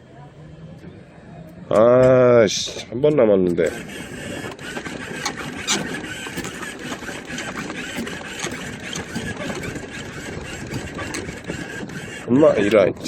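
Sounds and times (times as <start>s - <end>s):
claw machine mechanism whirring: 1.7s - 13.0s
small clicks and rattles: 1.7s - 13.0s.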